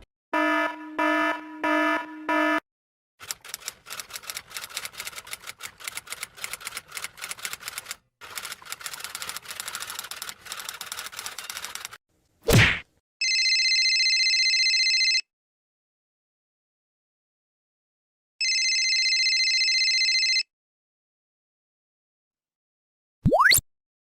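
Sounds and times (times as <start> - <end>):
rapid typing clicks: 3.2 - 12.0.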